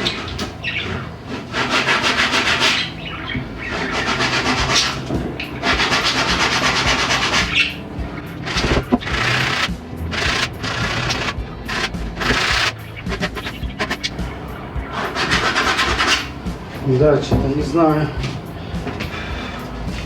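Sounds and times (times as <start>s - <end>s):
hand tool rasping wood: 0.0s - 16.4s.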